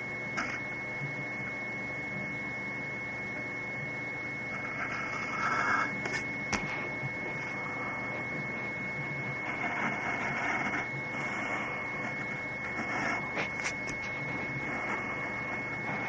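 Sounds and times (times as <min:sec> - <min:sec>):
steady high whine: 0:00.0 - 0:16.0
drawing tool scratching paper: 0:04.5 - 0:08.2, 0:09.3 - 0:16.0.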